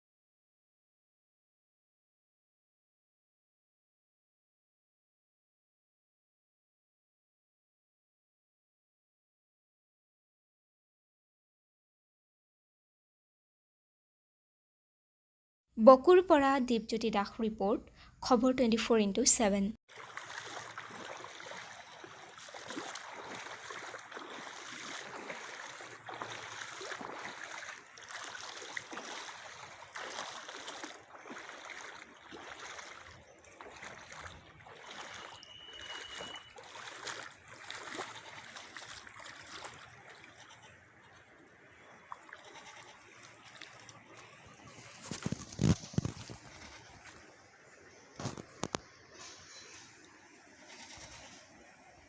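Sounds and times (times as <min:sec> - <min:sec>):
floodwater rushing and splashing: 0:19.9 - 0:48.8.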